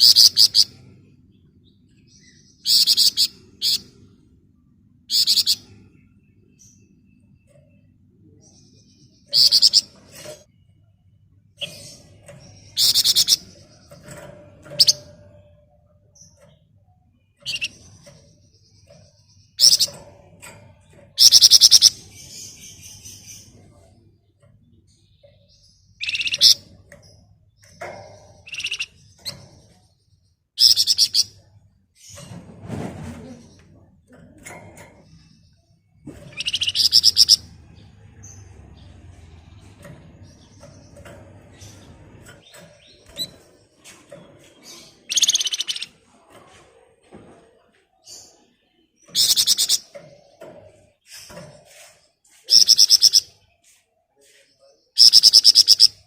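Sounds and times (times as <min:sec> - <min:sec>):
sharp high bird calls: 0:00.0 - 0:00.8, 0:02.6 - 0:03.9, 0:05.1 - 0:05.6, 0:21.2 - 0:22.0, 0:26.0 - 0:26.6, 0:28.4 - 0:29.0, 0:30.6 - 0:31.4, 0:36.3 - 0:37.5, 0:45.0 - 0:46.0, 0:49.1 - 0:49.9, 0:52.4 - 0:53.4, 0:54.9 - 0:56.0
faint bird chirps: 0:00.0 - 0:32.3, 0:34.4 - 0:56.0
songbird trilling: 0:05.1 - 0:05.7, 0:12.7 - 0:13.5, 0:21.2 - 0:22.4, 0:26.0 - 0:26.6, 0:28.4 - 0:28.9, 0:36.3 - 0:37.5, 0:45.0 - 0:46.0, 0:49.1 - 0:49.9, 0:52.4 - 0:53.3, 0:55.0 - 0:56.0.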